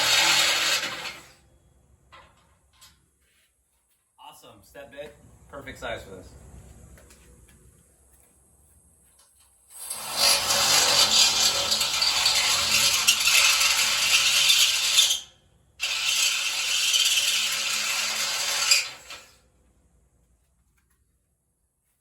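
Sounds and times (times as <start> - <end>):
power drill drilling through steel: 0.0 - 1.3, 9.8 - 15.2, 15.8 - 19.4.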